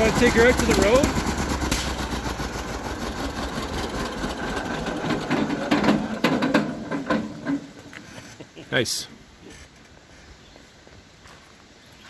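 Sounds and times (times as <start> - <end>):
tractor engine running: 0.0 - 7.9.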